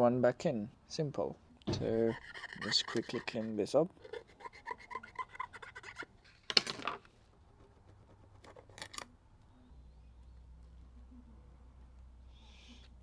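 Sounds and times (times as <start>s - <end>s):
hand tool scraping metal frame: 1.7s - 6.1s
faint low hum: 7.2s - 13.0s.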